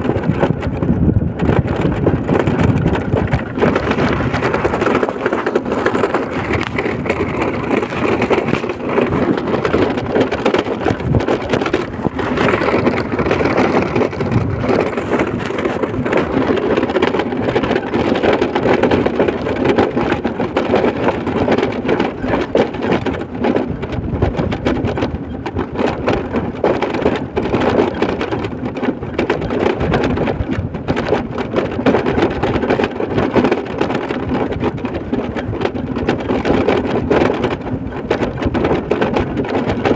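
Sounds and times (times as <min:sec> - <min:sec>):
wind on microphone: 0:00.0 - 0:39.9
rough crackle: 0:02.2 - 0:18.0.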